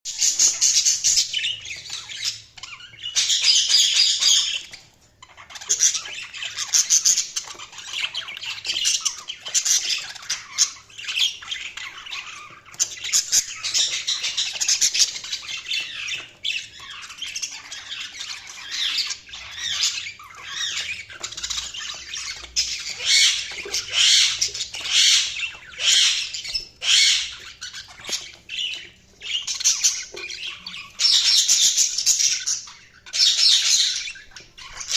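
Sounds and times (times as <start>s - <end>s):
budgies chirping and squawking: 0.1s - 34.9s.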